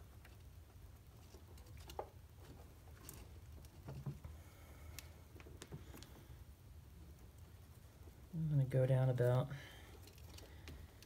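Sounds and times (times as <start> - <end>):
low steady hum: 0.0 - 11.0
cable insulation clicks and scrapes: 0.1 - 6.3.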